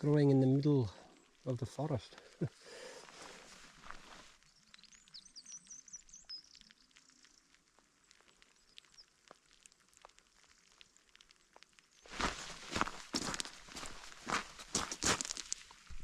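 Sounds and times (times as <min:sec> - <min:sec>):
faint ticks: 0:03.9 - 0:12.1
small bird chirping: 0:04.4 - 0:09.3.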